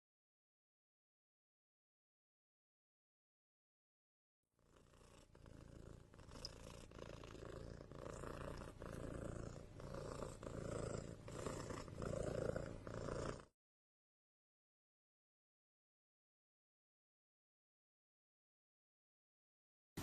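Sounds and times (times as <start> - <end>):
cat snoring: 4.6 - 13.6.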